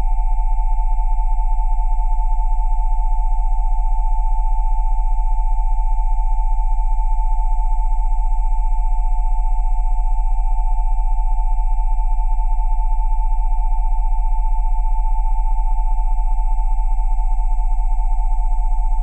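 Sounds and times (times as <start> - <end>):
pulsing sine tones: 10.2 - 19.0.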